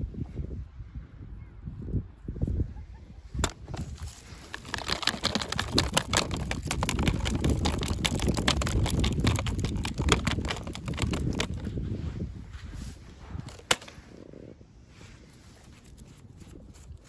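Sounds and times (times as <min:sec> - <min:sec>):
plastic packaging crinkling: 0:03.6 - 0:11.7.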